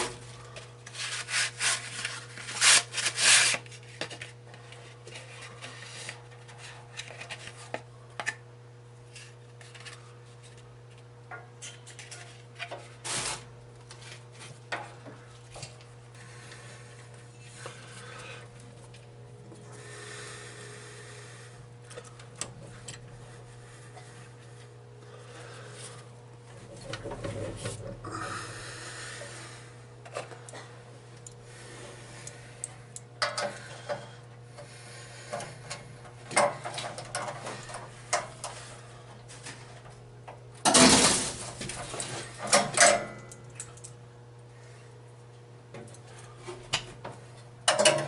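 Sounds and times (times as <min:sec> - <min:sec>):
steady low hum: 0:00.0 - 0:48.0
tools and metal parts clattering: 0:40.6 - 0:43.9, 0:47.7 - 0:48.0.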